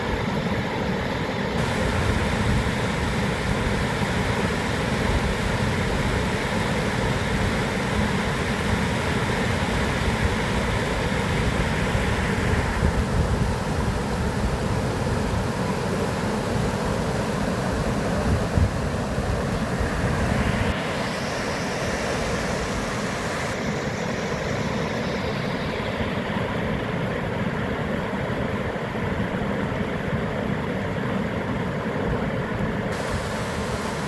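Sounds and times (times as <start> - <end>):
water rushing: 1.2 - 26.6, 32.9 - 34.0.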